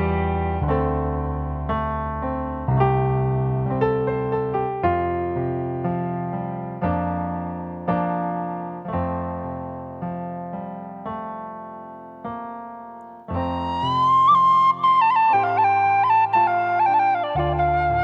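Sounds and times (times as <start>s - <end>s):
soft piano chords: 0.0s - 18.0s.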